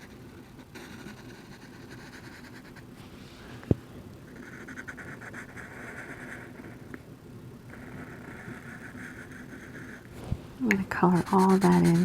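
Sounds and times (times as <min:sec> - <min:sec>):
marker scratching on paper: 0:04.3 - 0:06.8, 0:07.7 - 0:10.0, 0:10.6 - 0:12.0.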